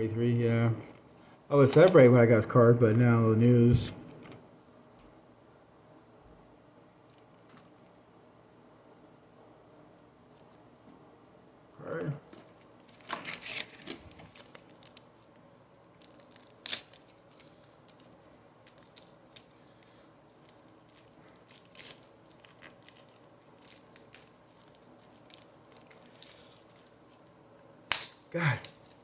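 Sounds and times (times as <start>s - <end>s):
cards and packaging rustling: 1.6s - 4.4s, 12.0s - 27.3s, 27.9s - 29.0s
sharp snap: 27.9s - 28.3s.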